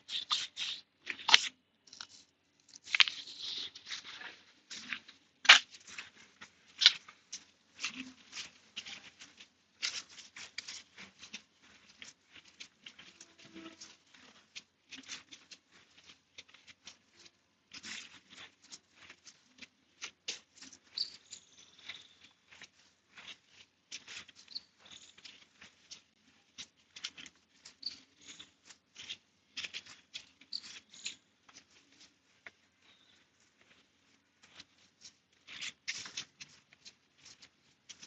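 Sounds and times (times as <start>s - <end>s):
brush scrubbing a chain: 0.0s - 4.9s.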